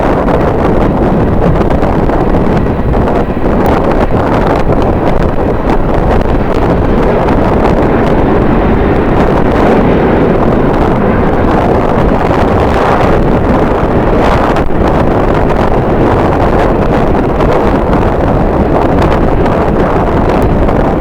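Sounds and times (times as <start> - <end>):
wind buffeting the microphone: 0.0 - 21.0.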